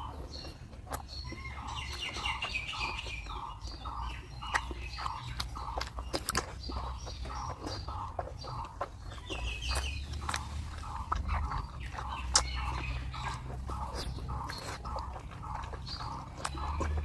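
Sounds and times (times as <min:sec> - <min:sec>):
bird calls: 0:00.0 - 0:17.0
crunchy chewing clicks: 0:00.0 - 0:17.0.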